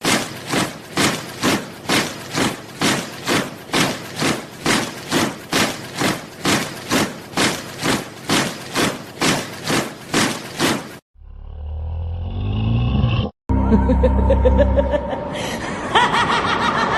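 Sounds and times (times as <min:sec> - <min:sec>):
soldiers marching boots: 0:00.0 - 0:11.0.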